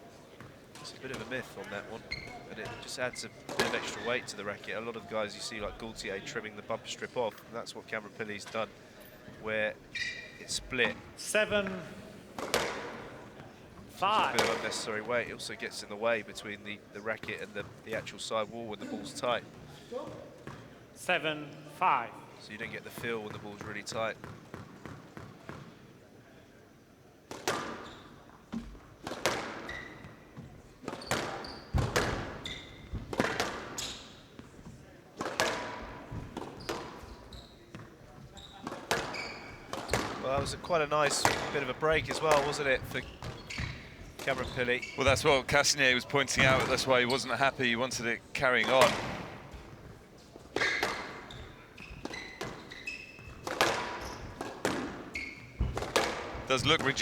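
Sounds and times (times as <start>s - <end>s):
shoes squeaking on court floor: 0.0s - 26.0s, 27.3s - 57.0s
squash ball hitting rackets and walls: 0.4s - 4.9s, 11.6s - 15.3s, 27.3s - 45.4s, 48.4s - 57.0s.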